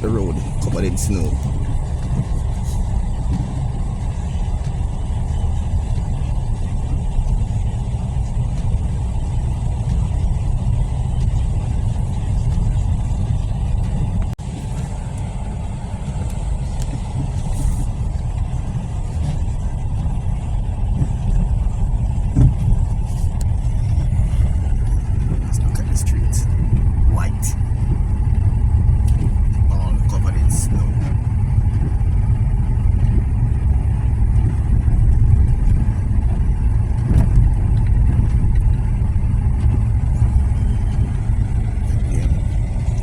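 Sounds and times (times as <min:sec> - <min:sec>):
car driving on snowy road: 0:00.0 - 0:43.0.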